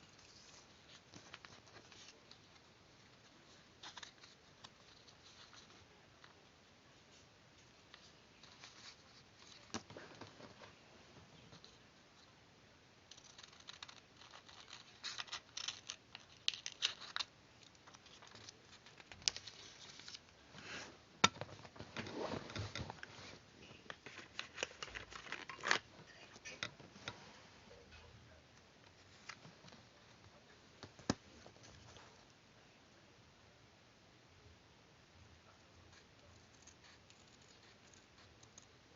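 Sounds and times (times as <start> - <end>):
paper rustling and crinkling: 13.1 - 27.4.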